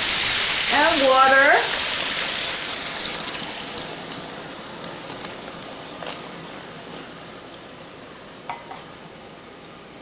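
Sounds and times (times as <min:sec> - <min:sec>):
food sizzling in wok: 0:00.0 - 0:04.7.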